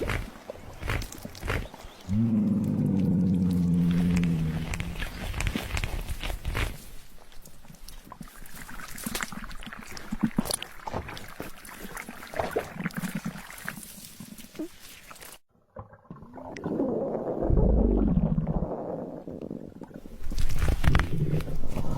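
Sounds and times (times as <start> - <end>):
long low belch: 2.1 - 5.0.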